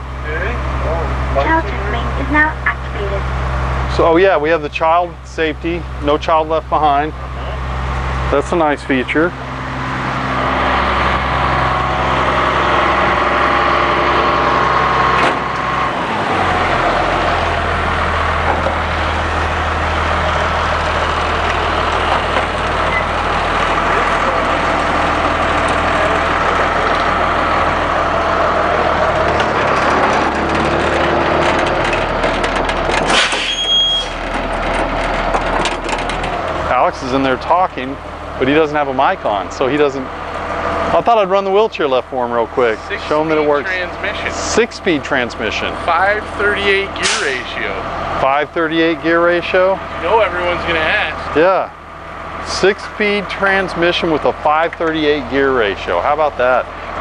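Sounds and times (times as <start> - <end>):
diesel bus engine idling: 0.0 - 57.0
brief high beep: 33.5 - 34.2.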